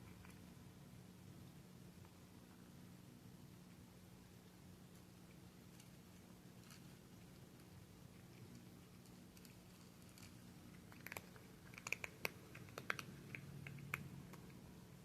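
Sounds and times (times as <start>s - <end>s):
cat crunching dry kibble: 5.1s - 14.7s.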